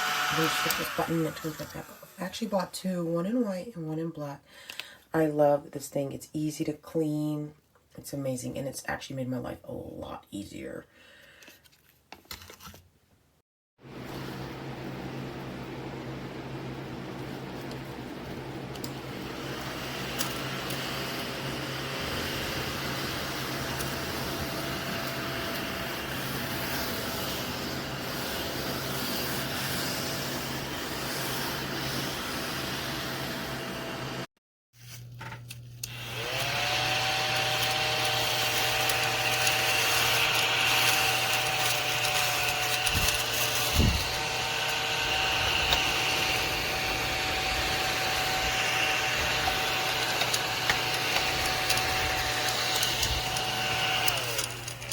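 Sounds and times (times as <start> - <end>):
small vacuum motor whine: 0.0 - 2.4, 13.8 - 34.3, 35.8 - 54.9.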